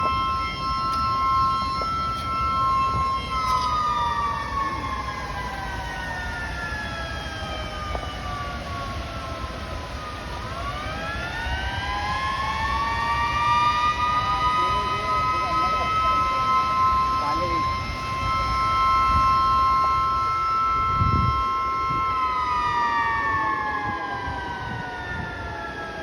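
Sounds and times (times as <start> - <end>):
two-note siren sliding in pitch: 0.0 - 9.4, 10.0 - 26.0.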